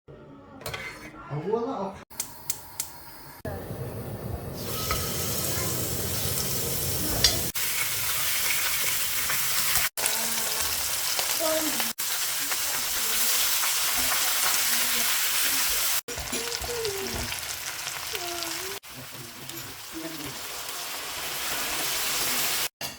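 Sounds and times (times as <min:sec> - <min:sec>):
food sizzling in hot oil: 0:04.4 - 0:22.7.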